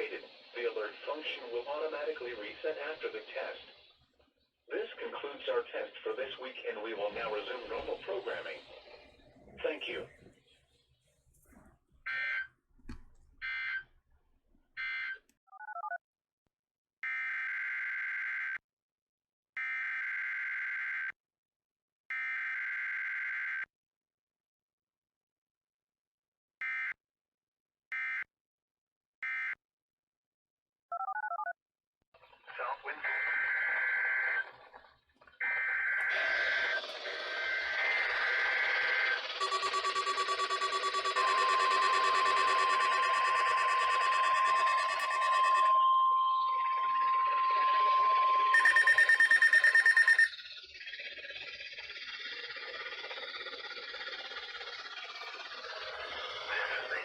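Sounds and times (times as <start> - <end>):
radio static: 0.0 - 3.9, 4.7 - 10.4, 32.4 - 57.0
screeching data tones: 6.4 - 10.1, 33.0 - 57.0
warbling tone: 36.2 - 56.4.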